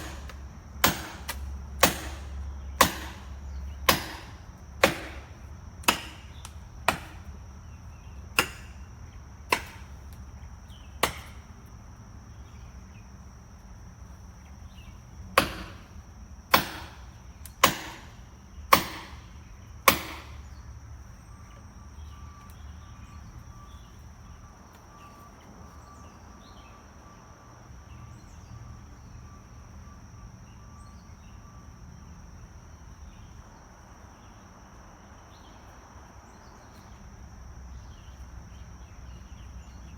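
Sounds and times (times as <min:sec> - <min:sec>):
sharp knocks: 0:00.0 - 0:07.3, 0:08.4 - 0:08.8, 0:09.5 - 0:09.9, 0:11.0 - 0:11.4, 0:15.4 - 0:15.9, 0:16.5 - 0:19.3, 0:19.9 - 0:20.4.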